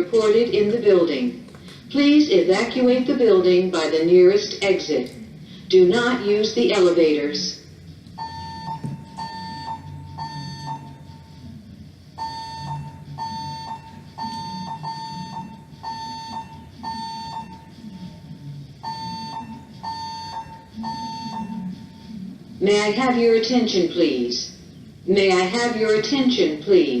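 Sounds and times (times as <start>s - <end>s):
fire alarm evacuation beeps: 8.2s - 11.5s, 12.2s - 18.2s, 18.8s - 22.2s.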